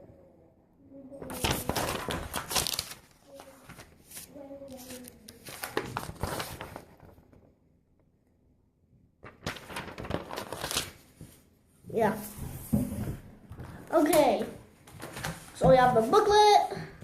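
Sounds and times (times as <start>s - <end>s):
packaging crinkling and tearing: 1.4s - 7.0s, 9.2s - 11.0s.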